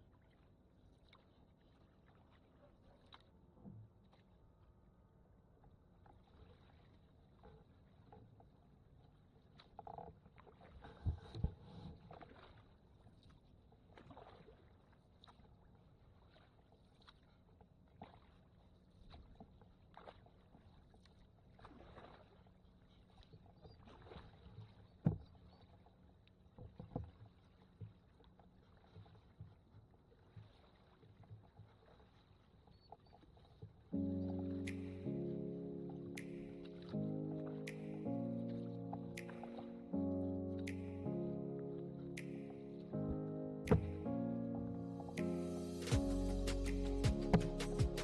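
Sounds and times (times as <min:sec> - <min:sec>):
paddle strokes in water: 0:00.0 - 0:04.4, 0:06.0 - 0:40.0, 0:40.6 - 0:48.0
sharp knocks: 0:43.7 - 0:44.1.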